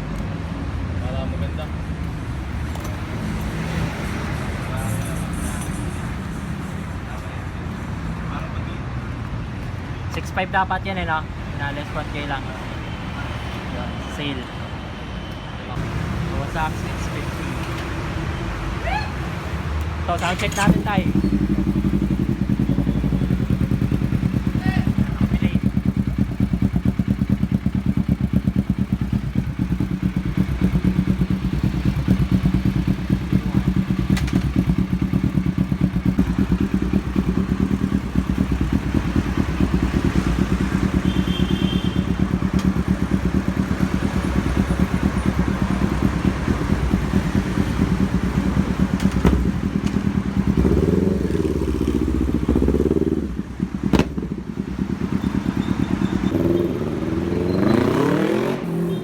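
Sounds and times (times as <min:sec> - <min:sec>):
motorcycle engine idling: 0:20.2 - 0:57.3.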